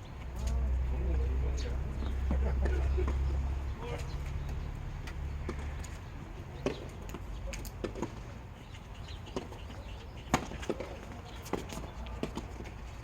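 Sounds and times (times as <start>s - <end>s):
tennis ball hit and bouncing: 5.0s - 8.2s, 9.3s - 9.6s, 10.3s - 12.8s.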